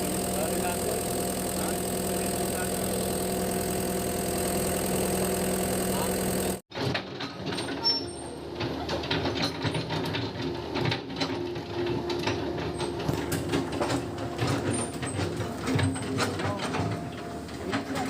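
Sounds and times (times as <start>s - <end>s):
machine humming: 0.0s - 6.6s.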